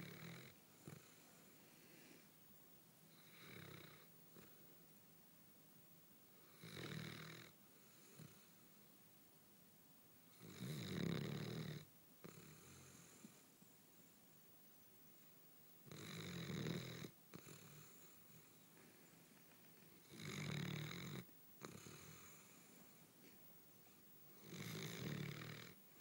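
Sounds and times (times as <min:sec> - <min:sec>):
dog snoring: 0:00.0 - 0:02.1, 0:03.1 - 0:04.6, 0:06.4 - 0:08.6, 0:10.3 - 0:13.4, 0:15.8 - 0:18.6, 0:20.0 - 0:23.0, 0:24.4 - 0:25.8.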